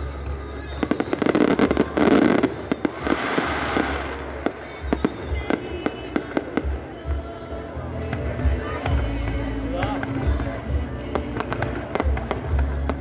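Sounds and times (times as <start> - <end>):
fireworks cracks and bangs: 0.3 - 7.3
fireworks crackling burst: 0.7 - 7.4.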